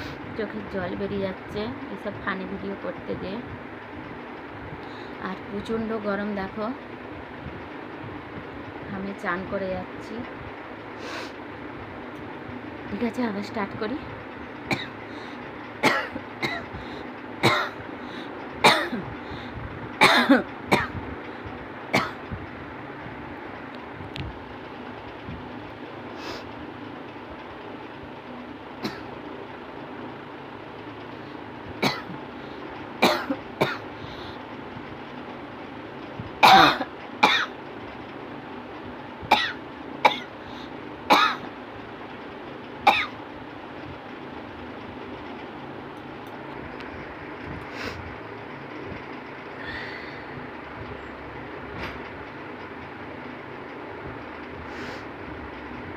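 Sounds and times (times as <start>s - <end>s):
person coughing: 14.7s - 15.0s, 15.8s - 16.7s, 18.7s - 19.1s, 20.0s - 20.9s, 28.8s - 29.1s, 31.8s - 32.2s, 33.0s - 33.8s, 36.4s - 37.5s.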